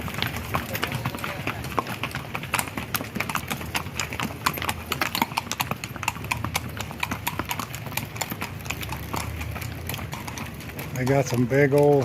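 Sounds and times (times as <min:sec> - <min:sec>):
hooves clattering on pavement: 0:00.0 - 0:12.0.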